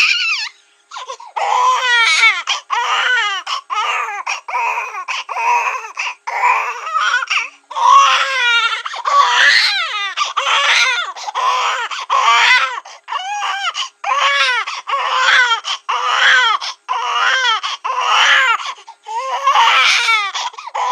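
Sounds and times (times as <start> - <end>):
cartoon baby crying: 0.0 - 18.6, 19.2 - 20.9.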